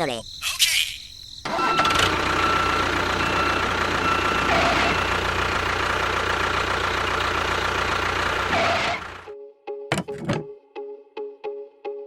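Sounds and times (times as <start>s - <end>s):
engine running steadily: 1.5s - 9.3s.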